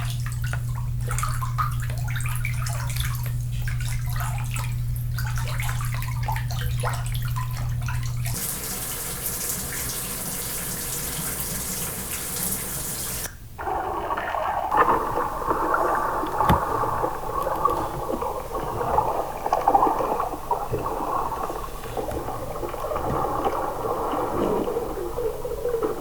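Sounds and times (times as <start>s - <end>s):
steady low hum: 0.0s - 8.4s
shower running: 0.0s - 13.3s, 14.7s - 26.0s
water splashing in a sink: 0.0s - 26.0s
muffled underwater sound: 13.6s - 26.0s.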